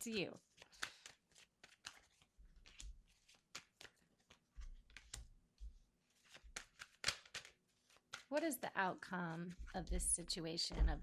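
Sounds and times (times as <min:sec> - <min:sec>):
card flicks and rustles: 0:00.5 - 0:05.3, 0:06.2 - 0:08.5.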